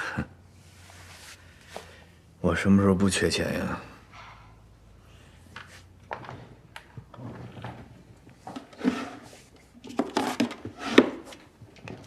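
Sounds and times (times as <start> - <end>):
soft rustling: 0.6 - 2.0.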